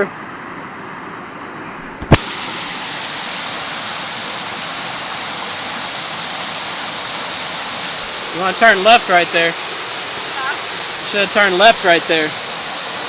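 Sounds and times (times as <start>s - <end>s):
waterfall rushing: 1.5s - 13.0s.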